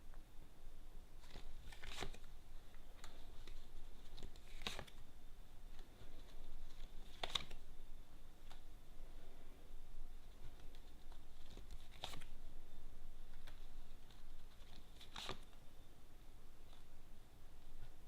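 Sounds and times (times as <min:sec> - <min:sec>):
cards tapping and rustling: 0:01.2 - 0:02.3, 0:02.9 - 0:05.0, 0:05.7 - 0:07.6.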